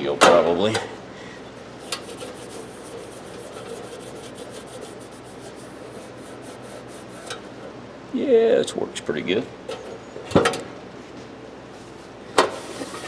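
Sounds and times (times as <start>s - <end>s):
hand scrubbing wax on metal box: 1.8s - 7.4s.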